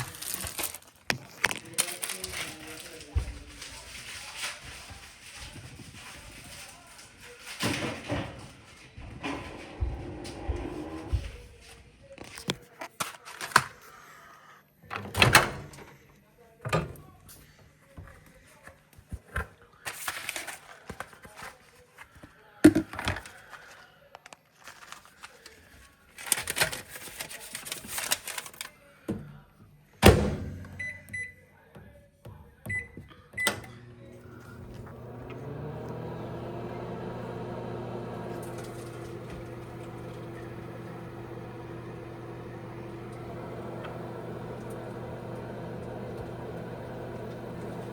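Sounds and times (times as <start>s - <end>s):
microwave oven humming: 9.2s - 11.2s, 33.4s - 47.9s
microwave door shutting: 33.4s - 47.9s.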